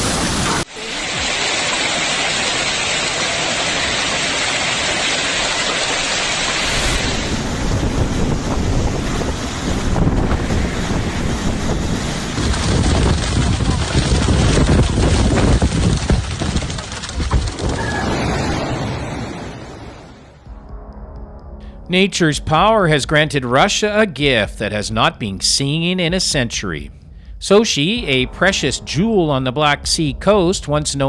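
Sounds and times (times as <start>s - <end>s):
heavy sea surf: 0.0s - 15.6s, 17.8s - 20.4s
storm wind: 5.0s - 20.8s
wind buffeting microphone: 6.5s - 18.2s.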